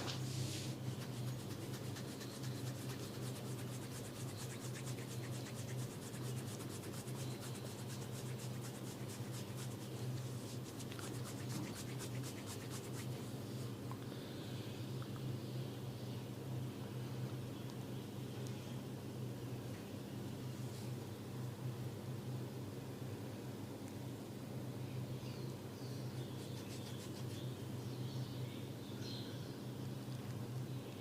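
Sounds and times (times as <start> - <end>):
hands rubbing skin and hair: 0.0 - 13.2, 26.4 - 27.4
steady low hum: 0.0 - 31.0.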